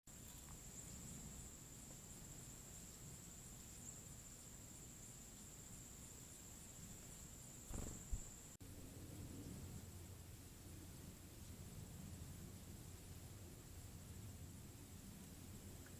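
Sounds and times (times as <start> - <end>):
insect trill: 0.1 - 8.6.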